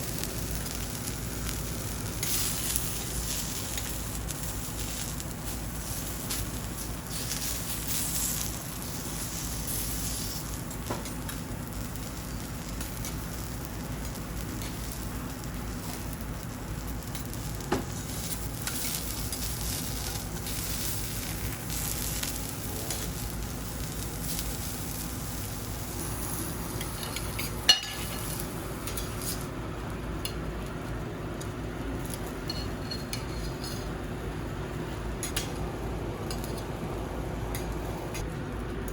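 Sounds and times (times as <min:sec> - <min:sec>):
food sizzling on griddle: 0:00.0 - 0:29.6.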